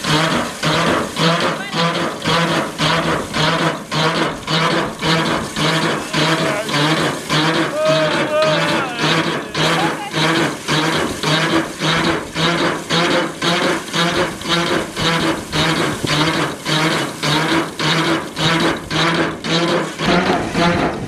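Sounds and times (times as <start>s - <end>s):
threshing machine humming and rattling: 0.0s - 21.0s.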